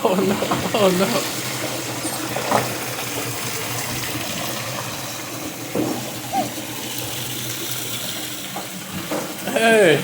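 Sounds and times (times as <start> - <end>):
water running from a tap: 0.0 - 10.0
squeak: 2.0 - 2.4.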